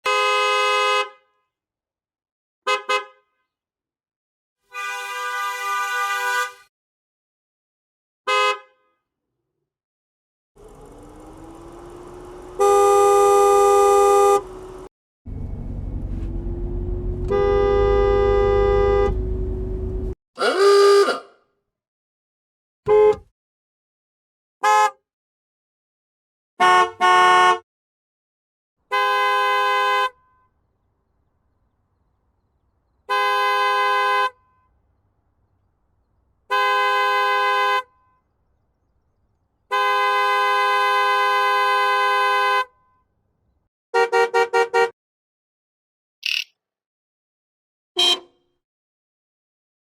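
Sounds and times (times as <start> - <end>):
car horn honking: 0.0 - 1.2, 2.7 - 3.3, 4.7 - 6.7, 12.2 - 14.8, 17.1 - 19.4, 20.4 - 21.4, 22.9 - 23.3, 24.6 - 25.0, 26.6 - 27.6, 28.9 - 30.5, 33.1 - 34.8, 36.5 - 38.3, 39.7 - 42.9, 44.0 - 44.9, 48.0 - 48.4
low engine rumble: 10.6 - 20.2.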